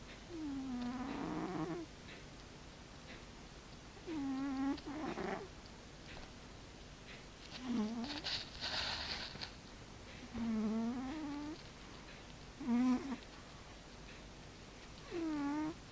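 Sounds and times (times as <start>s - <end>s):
cat snoring: 0.3s - 1.9s, 4.0s - 5.5s, 7.6s - 9.3s, 10.2s - 11.6s, 12.6s - 13.2s, 15.0s - 15.8s.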